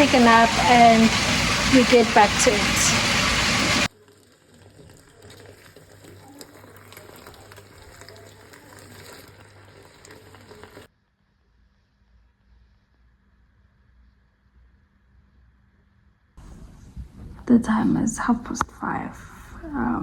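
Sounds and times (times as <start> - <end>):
food sizzling in a pan: 0.0 - 10.9.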